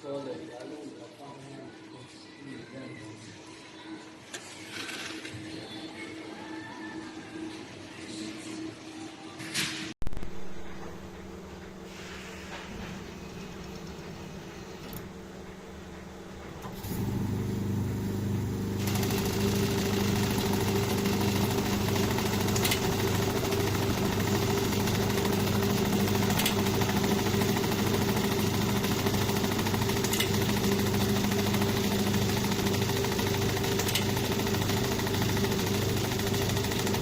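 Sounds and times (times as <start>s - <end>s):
machine hiss: 11.8s - 14.8s
machine motor hum: 12.5s - 37.0s.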